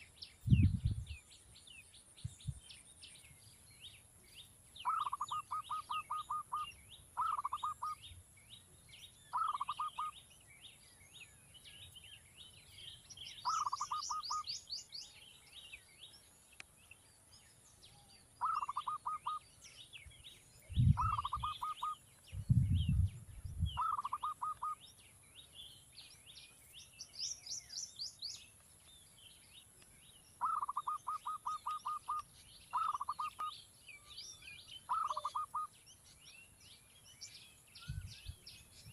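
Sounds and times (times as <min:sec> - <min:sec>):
dull low thumps: 0:00.5 - 0:01.1, 0:22.3 - 0:23.8
bird chicks chattering: 0:04.4 - 0:08.2, 0:09.3 - 0:10.4, 0:13.0 - 0:14.8, 0:18.3 - 0:38.9
high-pitched bird chirping: 0:04.8 - 0:08.2, 0:09.3 - 0:10.3, 0:13.0 - 0:14.9, 0:18.4 - 0:19.6, 0:20.6 - 0:25.0, 0:30.3 - 0:35.7.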